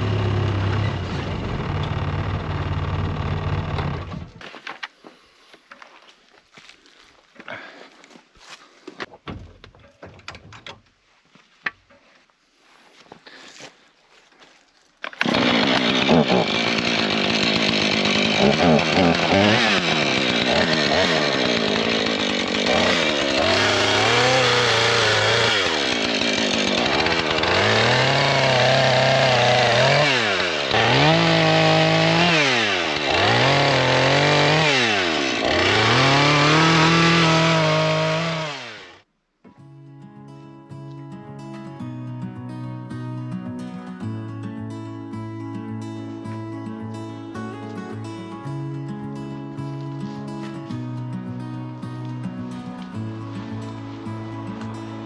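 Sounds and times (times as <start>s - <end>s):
chainsaw cutting firewood: 0.0s - 4.4s, 15.0s - 39.1s, 52.0s - 55.0s.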